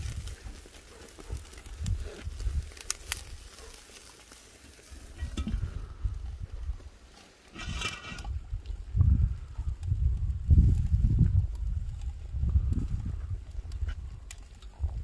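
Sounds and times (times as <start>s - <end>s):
meat sizzling on a grill: 0.0s - 8.2s.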